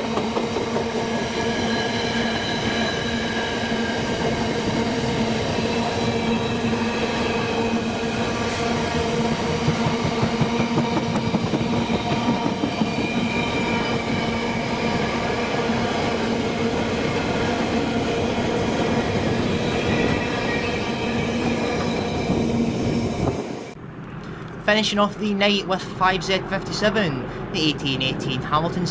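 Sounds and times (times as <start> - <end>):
electric locomotive whine: 0.0 - 24.7
freight train rumbling past: 0.0 - 28.9
wagons clattering on track: 9.0 - 13.7.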